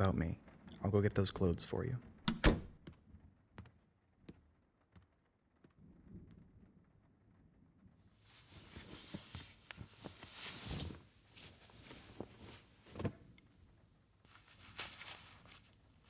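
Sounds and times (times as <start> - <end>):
cloth rustling: 8.2 - 13.2, 14.2 - 16.0.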